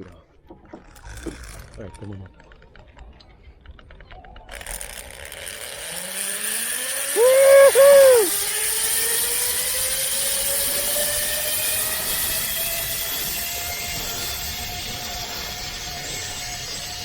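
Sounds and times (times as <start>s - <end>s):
zip-line trolley whine: 4.4s - 17.0s
rushing hiss: 7.0s - 8.4s
person yelling: 7.2s - 8.3s.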